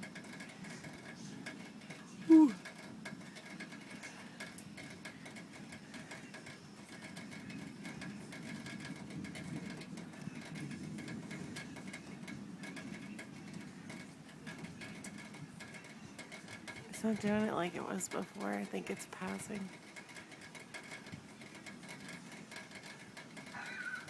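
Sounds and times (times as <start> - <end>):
quick steady ticking: 0.0 - 24.0
distant thunder rumbling: 7.1 - 19.9.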